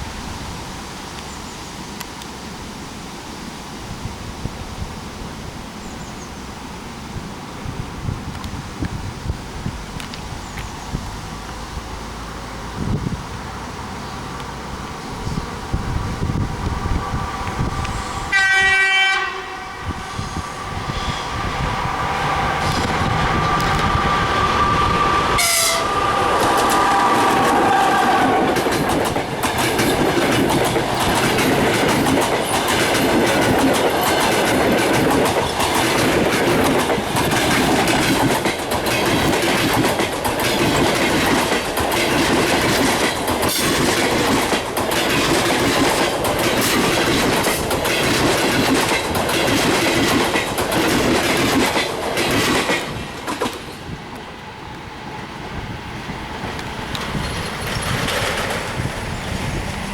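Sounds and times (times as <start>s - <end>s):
train rolling rumble: 2.1s - 59.9s
train wheels clicking over rail joints: 19.3s - 54.4s, 56.1s - 59.9s.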